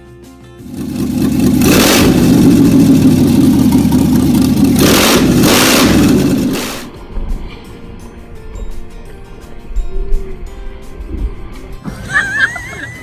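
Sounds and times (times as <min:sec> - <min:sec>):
vehicle engine running loudly: 0:00.6 - 0:07.2.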